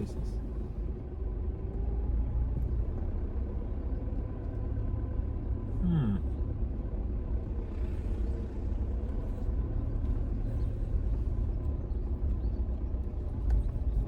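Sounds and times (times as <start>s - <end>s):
vehicle engine rumble: 0.0s - 14.0s.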